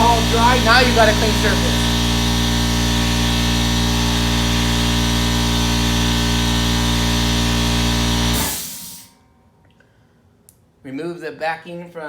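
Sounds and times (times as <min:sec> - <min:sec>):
air compressor humming and hissing: 0:00.0 - 0:09.2.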